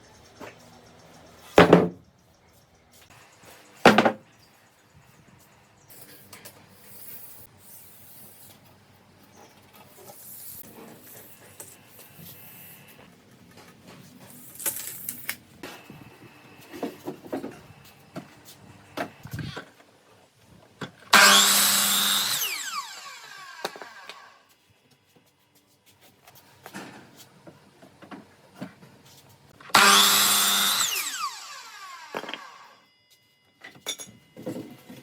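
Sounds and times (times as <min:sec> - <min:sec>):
wood knocking on wood: 0:01.6 - 0:02.0.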